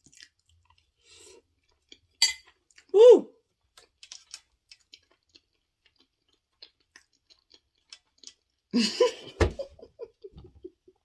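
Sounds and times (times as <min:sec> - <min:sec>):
chewing food: 0:00.0 - 0:08.7
person laughing: 0:08.8 - 0:10.7.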